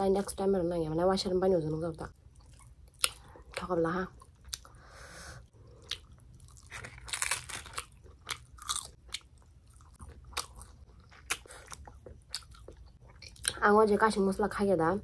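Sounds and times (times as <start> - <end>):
person chewing crunchy food: 2.3 - 3.6, 5.5 - 13.6.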